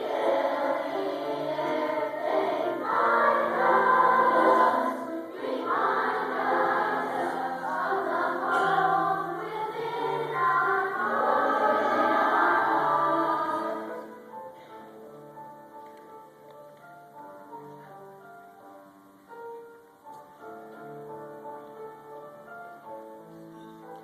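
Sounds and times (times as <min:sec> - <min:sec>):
choir holding sung notes: 0:00.0 - 0:15.4.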